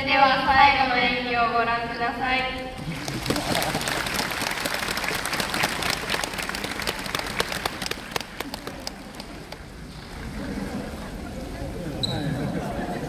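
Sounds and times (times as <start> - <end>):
audience applauding: 2.8 - 9.8.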